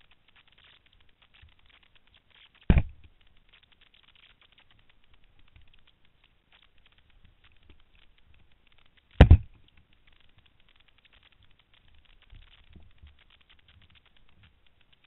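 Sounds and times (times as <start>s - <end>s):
faint scattered crackling: 0.0s - 15.0s
heavy thud: 2.7s - 3.0s, 9.2s - 9.6s
quick hits: 9.2s - 9.6s.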